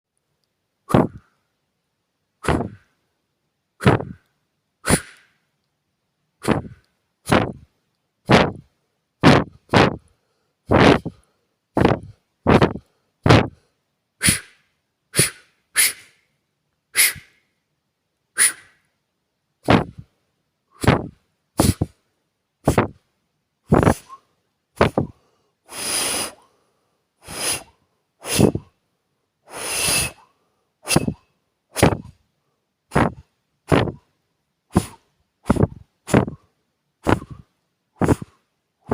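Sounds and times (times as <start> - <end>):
person blowing puffs of air: 0.8 - 1.5, 2.4 - 3.0, 3.8 - 5.5, 6.4 - 16.3, 16.9 - 17.5, 18.4 - 18.9, 19.6 - 22.0, 22.6 - 23.1, 23.7 - 28.8, 29.4 - 32.2, 32.9 - 34.1, 34.7 - 38.9.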